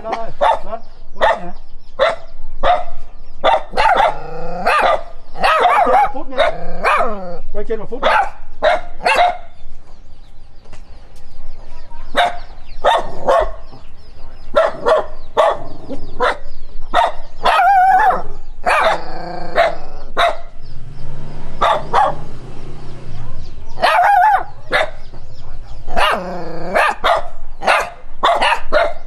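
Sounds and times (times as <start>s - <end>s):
dog barking: 0.4s - 7.2s, 8.0s - 9.6s, 12.1s - 13.8s, 14.5s - 20.6s, 21.6s - 22.4s, 23.2s - 25.2s, 25.9s - 29.0s
drawn-out wavering dog bark: 0.4s - 7.4s, 8.0s - 9.6s, 12.1s - 13.8s, 14.5s - 29.0s.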